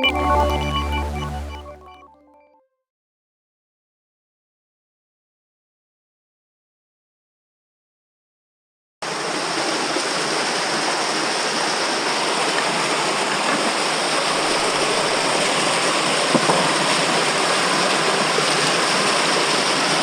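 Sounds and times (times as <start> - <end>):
creek water flowing: 9.0 - 20.0.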